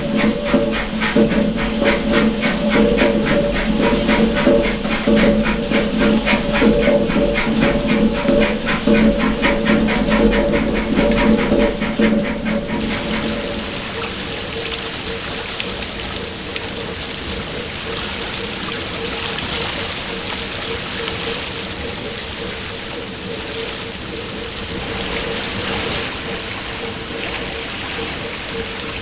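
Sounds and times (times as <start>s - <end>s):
paddle wheels churning water: 0.0s - 29.0s
steady hum: 0.0s - 29.0s.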